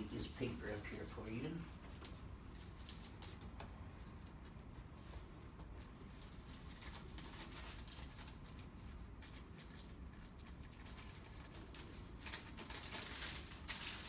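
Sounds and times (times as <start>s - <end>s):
thin paper rustling: 0.0s - 14.0s.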